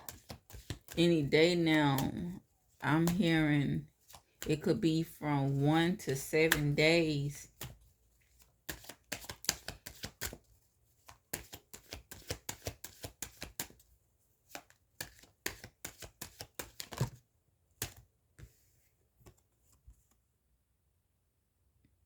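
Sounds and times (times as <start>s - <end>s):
cards being shuffled: 0.0s - 1.0s, 4.0s - 4.5s, 7.5s - 13.8s, 14.5s - 17.2s, 17.8s - 18.5s.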